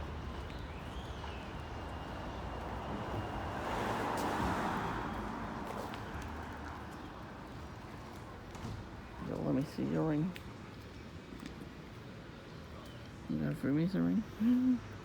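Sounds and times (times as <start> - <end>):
car passing: 2.2 - 6.6.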